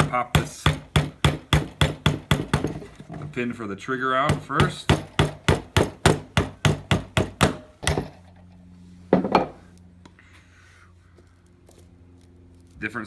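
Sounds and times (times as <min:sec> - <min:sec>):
hammer tapping a pin punch: 0:00.0 - 0:03.4, 0:04.3 - 0:08.1.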